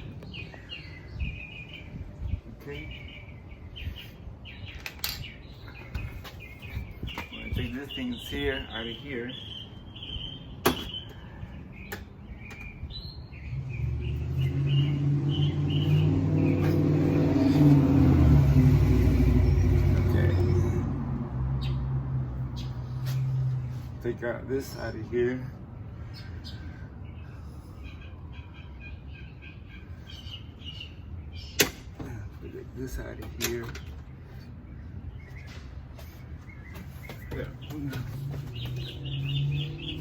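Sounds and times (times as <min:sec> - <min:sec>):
vehicle engine rumble: 0:00.0 - 0:28.3, 0:29.6 - 0:40.0
birds chirping: 0:00.0 - 0:40.0
sharp click: 0:31.6 - 0:31.8.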